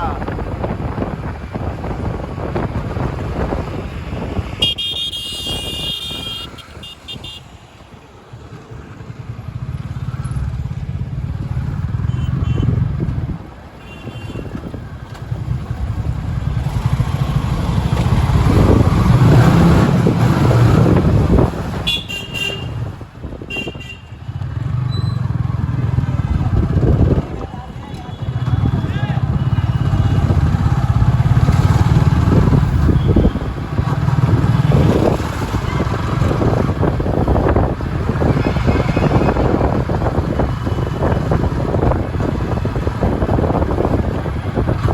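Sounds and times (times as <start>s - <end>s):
motorcycles and cars passing: 0.0s - 44.9s
vehicle horn: 4.6s - 7.6s, 12.1s - 12.8s, 13.8s - 14.6s, 21.8s - 22.8s, 23.5s - 24.2s, 32.9s - 33.5s, 38.2s - 39.7s.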